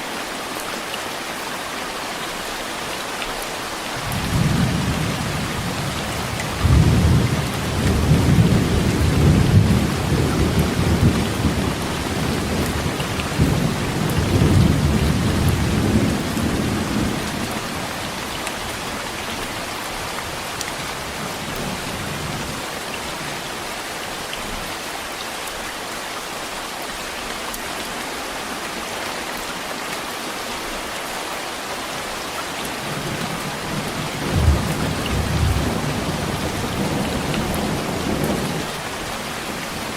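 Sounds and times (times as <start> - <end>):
heavy rain: 0.0 - 39.9
thunder rumbling: 4.0 - 17.9, 32.8 - 38.7.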